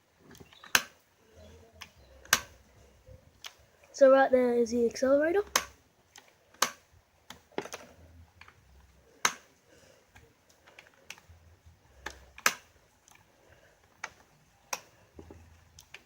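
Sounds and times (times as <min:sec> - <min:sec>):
plastic trigger clicks and knocks: 0:01.8 - 0:02.6, 0:05.5 - 0:08.6, 0:12.0 - 0:13.2.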